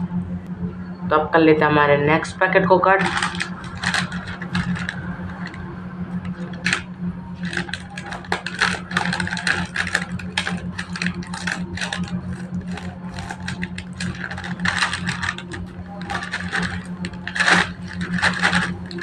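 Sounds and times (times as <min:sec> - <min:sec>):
steady low hum: 0:00.0 - 0:19.0
scissors snipping plastic packet: 0:03.0 - 0:05.6, 0:06.3 - 0:06.8, 0:07.4 - 0:19.0.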